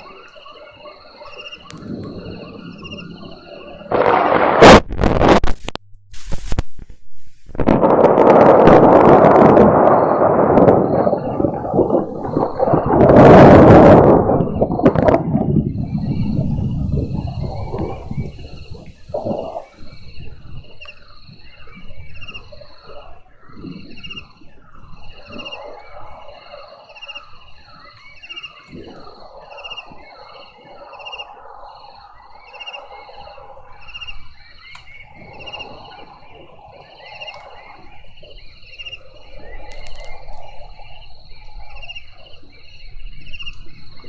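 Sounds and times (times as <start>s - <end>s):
pulsed frog chirp: 0.0s - 5.4s, 8.7s - 44.0s
low rumble: 1.7s - 20.5s.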